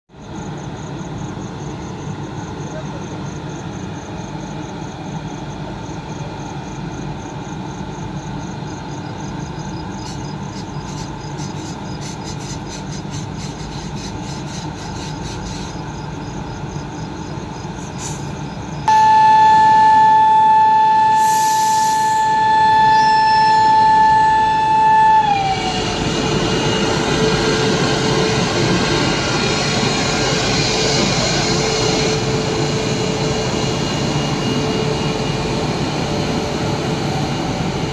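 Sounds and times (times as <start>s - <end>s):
train rumbling: 0.2s - 37.9s
locomotive horn: 18.9s - 28.4s.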